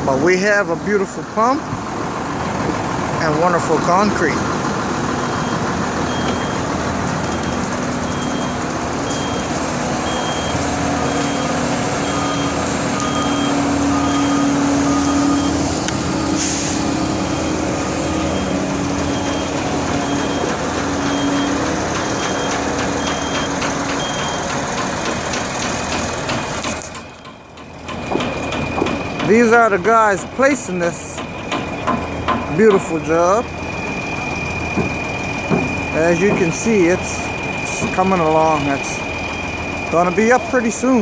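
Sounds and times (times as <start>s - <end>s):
diesel engines running: 0.0s - 41.0s
truck back-up alarm beeping: 4.2s - 41.0s
lower-pitched back-up alarm: 5.2s - 24.7s, 32.1s - 41.0s
short air hiss: 16.4s - 17.0s.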